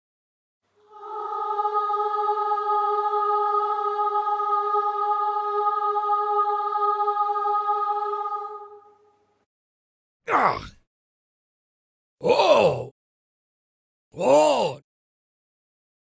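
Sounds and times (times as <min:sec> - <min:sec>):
voices singing a long high note: 0:00.8 - 0:09.3.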